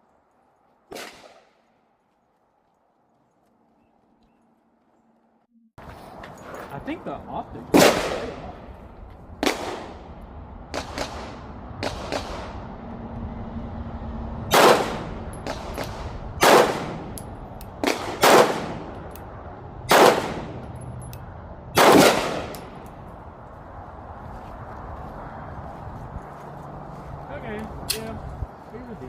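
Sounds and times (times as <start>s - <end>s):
pistol shots with ringing tail: 7.8s - 8.4s, 14.5s - 17.2s, 17.8s - 18.8s, 19.9s - 20.6s, 21.8s - 22.8s
faint distant gunshots: 9.4s - 10.0s, 21.8s - 22.8s.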